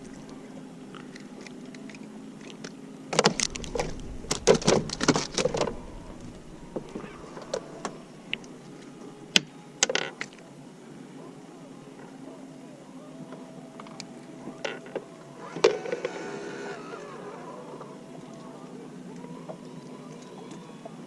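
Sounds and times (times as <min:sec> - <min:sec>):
faint steady hum: 0:00.0 - 0:21.0
gear clattering in a boat: 0:03.2 - 0:08.6.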